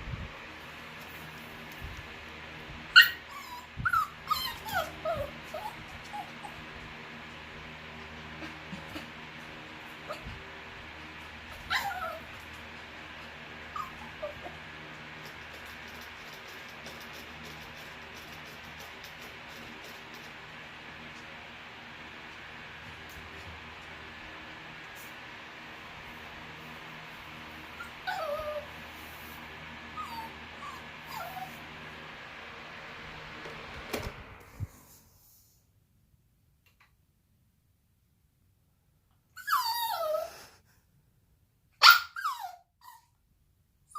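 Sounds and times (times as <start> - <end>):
steady low hum: 0.0 - 39.1
dog whining: 2.9 - 6.8, 11.2 - 20.3, 27.7 - 31.7, 39.4 - 40.6, 41.8 - 43.2.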